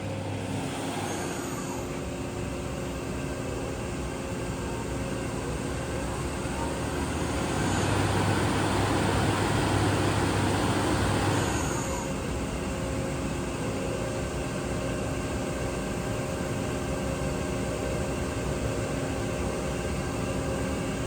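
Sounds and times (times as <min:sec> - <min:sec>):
machinery hum: 0:00.0 - 0:21.0.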